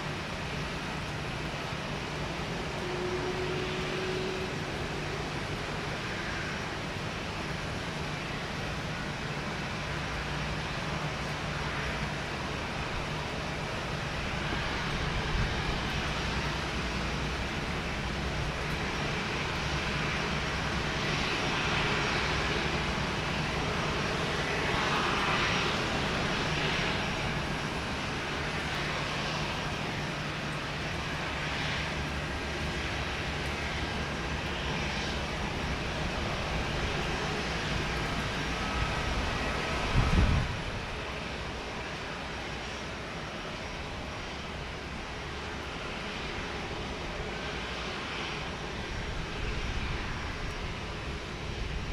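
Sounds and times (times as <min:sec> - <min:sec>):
aircraft engines humming: 0:00.0 - 0:51.9
broad rushing noise: 0:00.0 - 0:51.9.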